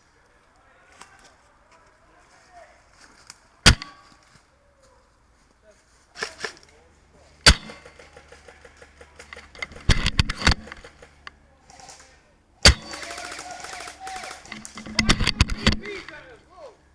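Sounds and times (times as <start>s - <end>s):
continuous rapid rattle: 7.5s - 12.1s, 12.7s - 16.3s.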